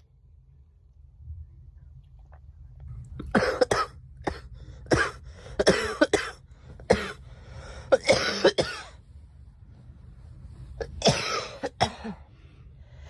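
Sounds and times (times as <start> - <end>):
girl coughing: 3.3 - 7.2, 7.9 - 9.0, 10.8 - 12.3.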